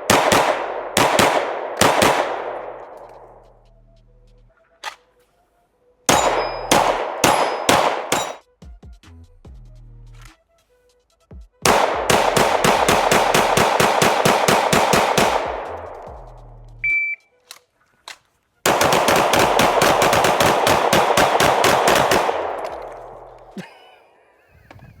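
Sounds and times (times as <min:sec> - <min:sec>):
rapid pistol fire: 0:00.0 - 0:03.0, 0:06.1 - 0:08.4, 0:11.6 - 0:16.2, 0:18.7 - 0:23.5
high electronic beep: 0:16.8 - 0:17.2.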